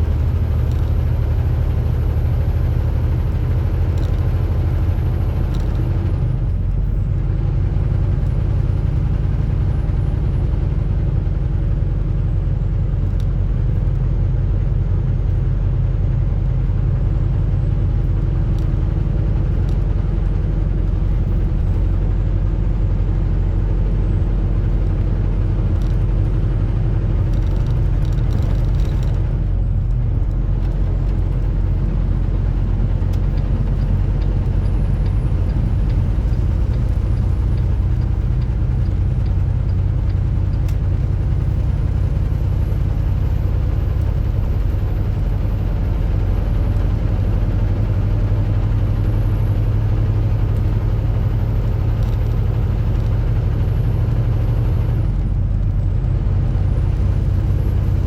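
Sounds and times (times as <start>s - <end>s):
road noise: 0.0s - 58.0s
truck engine drone: 0.0s - 58.0s
faint clicks: 51.9s - 53.3s.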